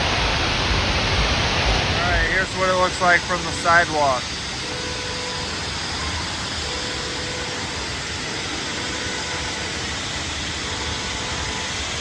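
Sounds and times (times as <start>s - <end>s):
low rumble: 0.0s - 4.6s
faint steady whine: 0.0s - 12.0s.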